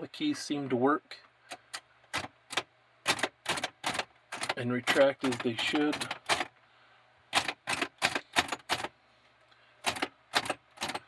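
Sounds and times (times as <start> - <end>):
typewriter key strikes: 2.1 - 6.5, 7.3 - 8.9, 9.8 - 11.0.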